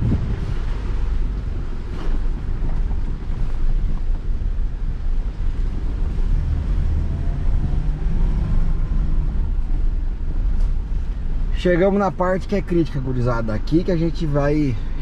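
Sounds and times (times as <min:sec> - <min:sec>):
wind buffeting microphone: 0:00.0 - 0:11.5
low engine rumble: 0:00.0 - 0:15.0.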